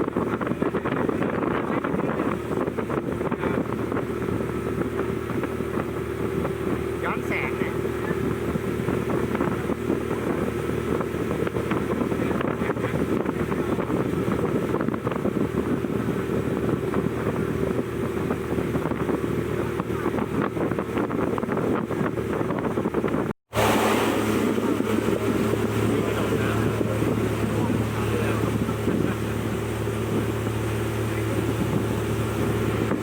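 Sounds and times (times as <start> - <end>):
boat engine running: 0.0 - 33.0
wind noise on microphone: 0.0 - 33.0.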